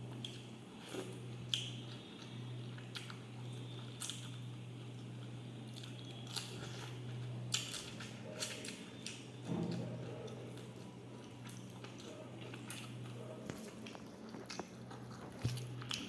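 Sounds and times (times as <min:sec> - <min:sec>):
chewing and mouth sounds: 0:00.0 - 0:16.0.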